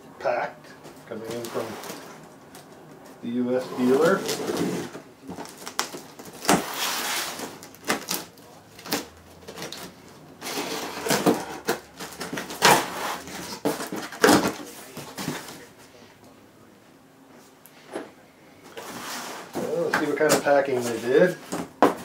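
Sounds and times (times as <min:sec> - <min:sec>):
cardboard box rustling and scraping: 0:01.3 - 0:02.2, 0:03.6 - 0:05.7, 0:10.4 - 0:15.6, 0:18.8 - 0:19.8.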